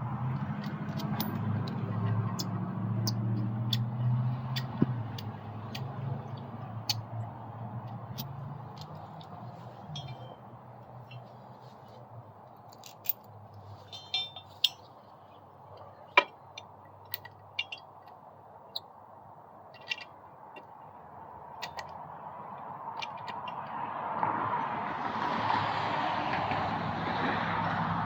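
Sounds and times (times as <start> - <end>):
metal tools clinking: 0.4 - 3.8, 7.8 - 18.2.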